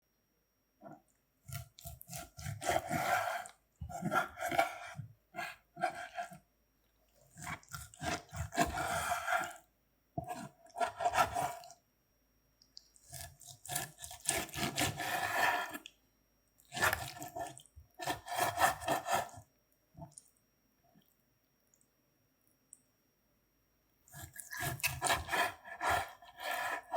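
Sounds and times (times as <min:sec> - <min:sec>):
hands and utensils scraping food: 0:01.5 - 0:06.4, 0:07.2 - 0:09.6, 0:10.2 - 0:11.7, 0:13.0 - 0:15.9, 0:16.7 - 0:19.4, 0:24.1 - 0:26.9.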